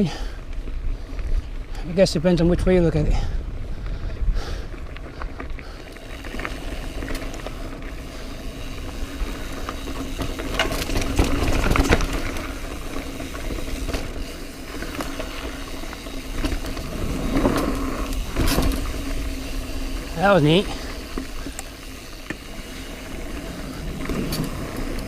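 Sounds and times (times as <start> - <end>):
bike rattling over rough trail: 0.0 - 25.0
wind rumble on microphone: 0.4 - 5.8
tyre noise: 4.7 - 25.0.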